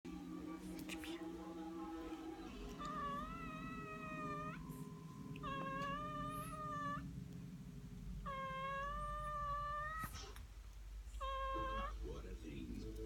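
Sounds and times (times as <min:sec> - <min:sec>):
cat meowing: 0:02.6 - 0:07.1, 0:08.2 - 0:10.4, 0:11.1 - 0:12.0.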